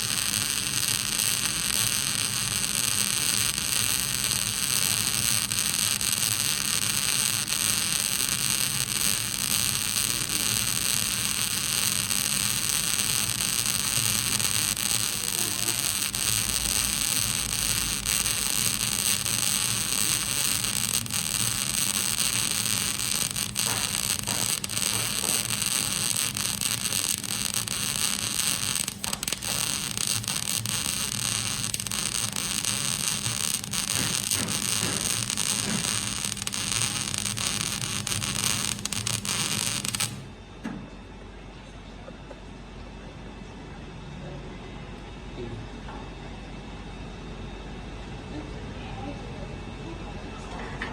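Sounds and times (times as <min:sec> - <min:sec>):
welding arc crackling hiss: 0:00.0 - 0:40.3.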